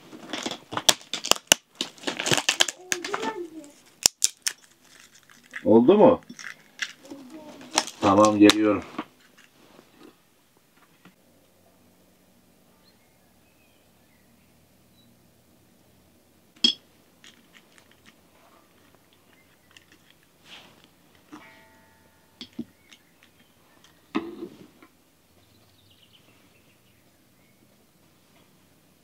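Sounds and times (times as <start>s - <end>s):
objects knocking and clicking: 0.1s - 9.6s, 16.6s - 20.4s, 22.4s - 24.5s
brief ringing clink: 21.4s - 22.5s.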